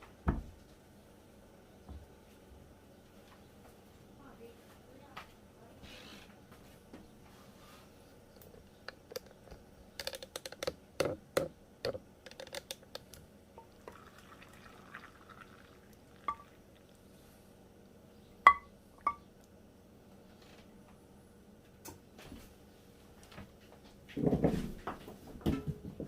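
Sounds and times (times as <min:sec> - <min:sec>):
liquid pouring: 0:13.6 - 0:17.1.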